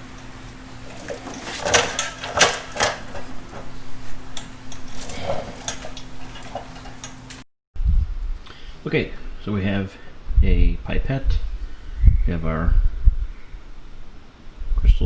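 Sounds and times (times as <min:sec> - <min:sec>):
clattering knocks and scraping: 0:00.0 - 0:07.4
steady low hum: 0:00.0 - 0:15.0.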